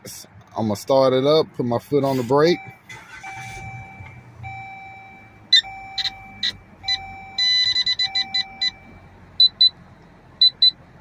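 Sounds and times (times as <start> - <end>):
low dashboard warning chime: 2.5 - 9.8, 10.4 - 10.8
short high beeps: 3.3 - 9.8.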